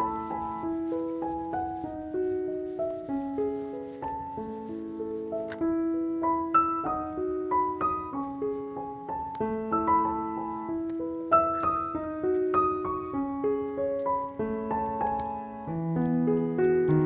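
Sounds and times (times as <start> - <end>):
gentle piano melody: 0.0 - 17.0.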